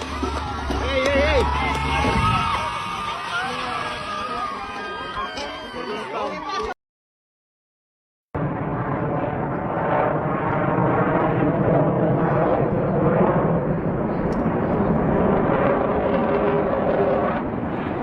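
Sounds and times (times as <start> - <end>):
fighter jet engine: 8.4 - 18.0.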